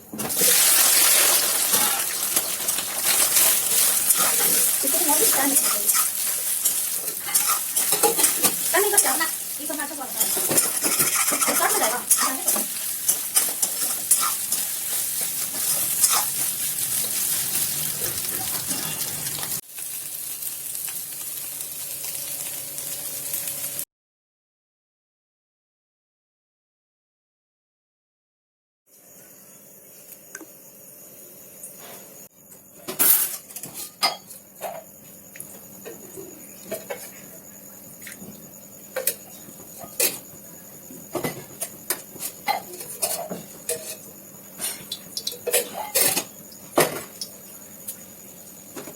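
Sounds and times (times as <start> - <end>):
food sizzling in a frying pan: 0.2 - 23.9, 32.9 - 48.9
utensils and dishes clicking: 1.4 - 19.6.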